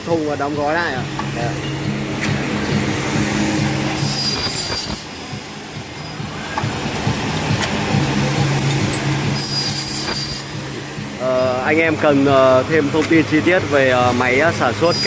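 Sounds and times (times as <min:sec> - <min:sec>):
machine motor hum: 0:00.0 - 0:15.0
high-pitched metallic squeal: 0:01.4 - 0:06.6, 0:08.1 - 0:11.2, 0:14.8 - 0:15.0.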